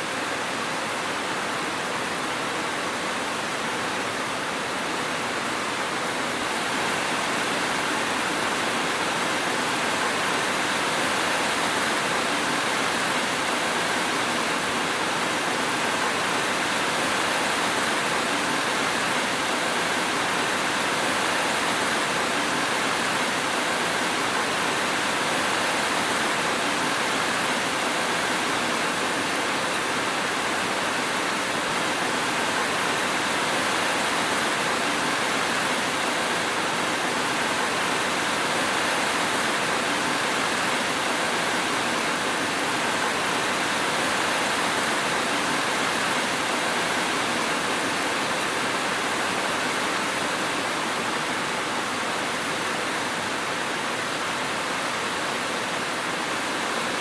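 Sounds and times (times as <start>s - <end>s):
steady rain falling: 0.0s - 57.0s.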